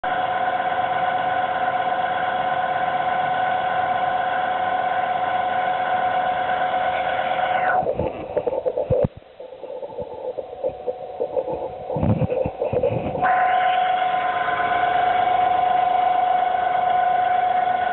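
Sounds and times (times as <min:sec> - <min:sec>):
air conditioner hum-whine: 0:00.0 - 0:17.9
knocks and clicks: 0:07.8 - 0:13.2.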